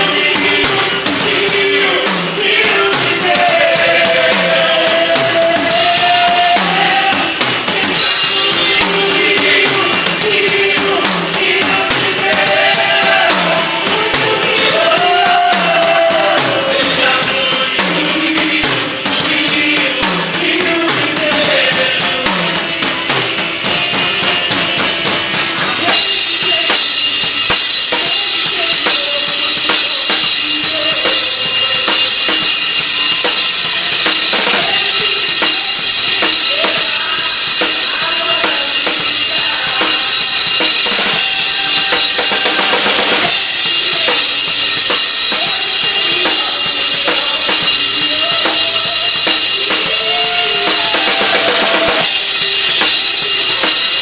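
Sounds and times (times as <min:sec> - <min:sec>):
band playing with drum kit: 0:00.0 - 0:54.0.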